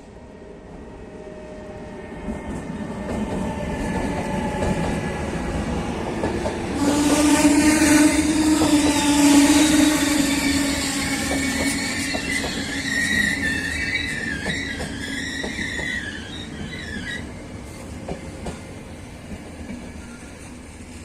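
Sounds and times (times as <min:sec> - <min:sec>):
train rolling into station: 0:00.0 - 0:21.0
high wheel squeal: 0:08.6 - 0:17.4.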